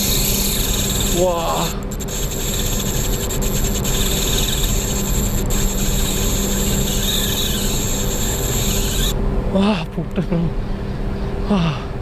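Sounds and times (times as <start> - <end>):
fishing reel drag screaming: 0.0 - 9.2.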